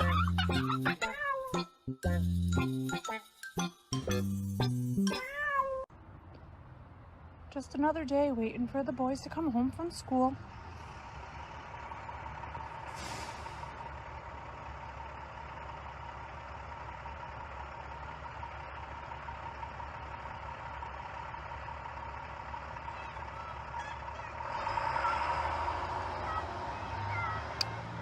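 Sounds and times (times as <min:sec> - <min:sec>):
large vehicle engine running: 0:07.7 - 0:28.0.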